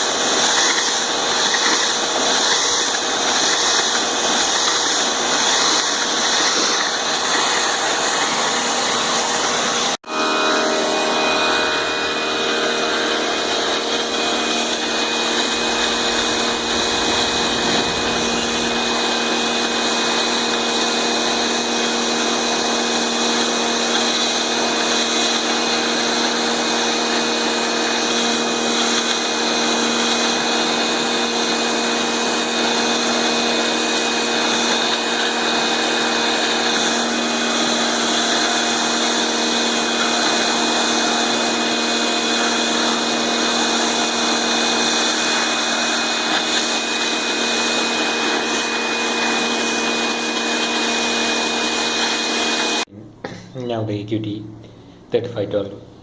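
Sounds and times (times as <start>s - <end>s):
water spray hiss: 0.0s - 9.9s, 14.3s - 22.4s
pressure washer motor whine: 0.0s - 52.9s.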